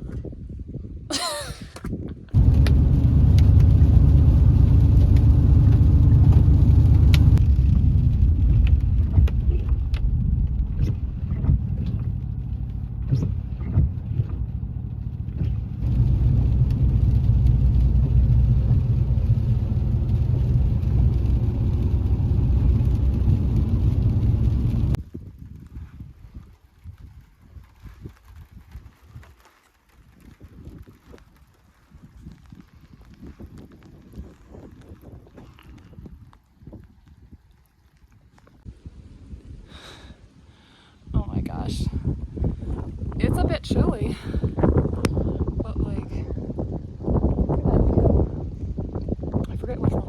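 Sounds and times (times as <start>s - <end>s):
car road rumble from inside: 1.6s - 25.0s.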